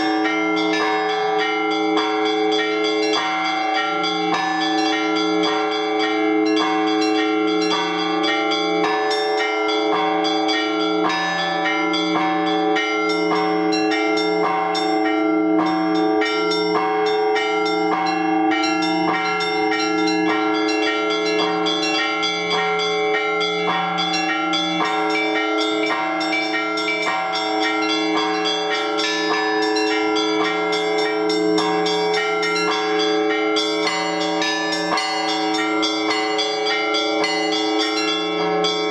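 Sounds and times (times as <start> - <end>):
low church bell struck: 0.0 - 38.9
small bells pealing rapidly: 0.0 - 38.9.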